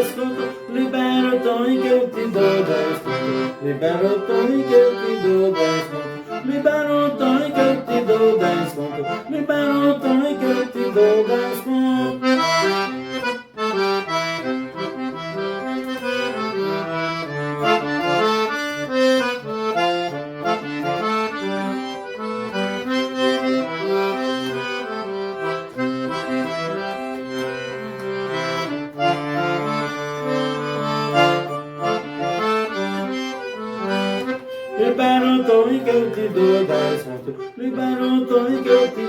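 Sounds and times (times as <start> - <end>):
person singing: 0.0 - 13.0, 34.0 - 39.0
accordion melody: 0.0 - 39.0.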